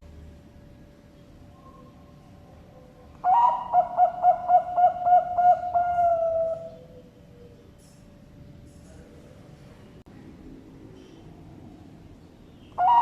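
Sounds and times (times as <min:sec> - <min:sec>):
dove cooing: 0:01.5 - 0:07.8, 0:12.7 - 0:13.0.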